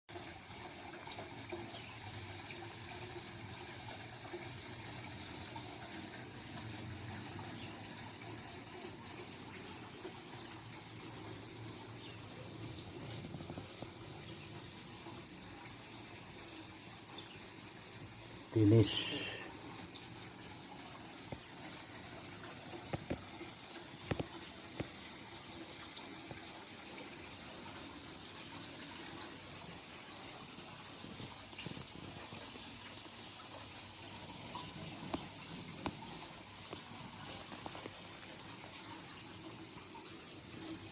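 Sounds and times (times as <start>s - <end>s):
waterfall splashing into pond: 0.1s - 40.9s.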